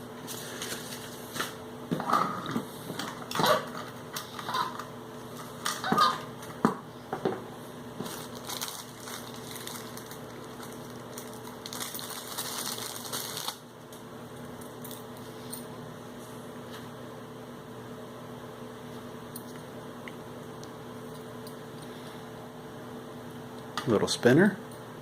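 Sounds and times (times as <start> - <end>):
steady low hum: 0.0 - 25.0
plastic bag crinkling: 8.0 - 13.7.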